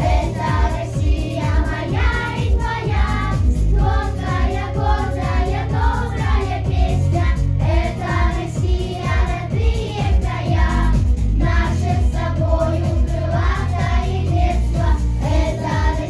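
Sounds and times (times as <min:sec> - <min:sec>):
children singing: 0:00.0 - 0:16.0
instrumental accompaniment with beat: 0:00.0 - 0:16.0.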